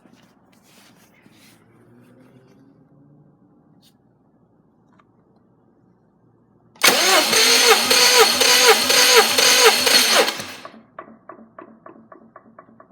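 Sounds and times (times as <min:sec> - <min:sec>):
starter motor cranking engine: 0:06.8 - 0:10.8.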